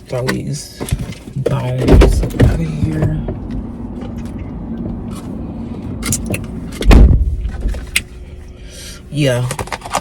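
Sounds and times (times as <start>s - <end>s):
low steady hum: 0.0s - 10.0s
heavy thump: 6.8s - 7.8s.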